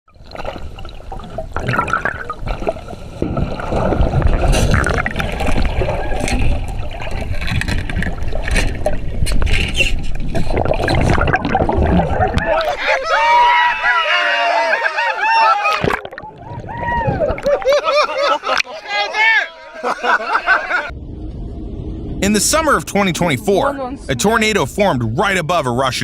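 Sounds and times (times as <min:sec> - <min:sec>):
rushing churning water: 0:00.2 - 0:13.0.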